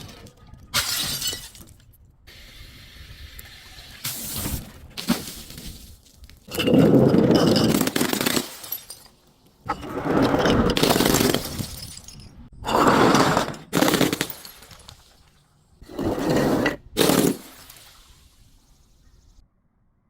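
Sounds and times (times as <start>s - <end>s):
glass bottles breaking: 0.7s - 1.9s, 4.0s - 9.9s, 10.5s - 12.5s, 13.1s - 15.3s, 16.9s - 18.2s.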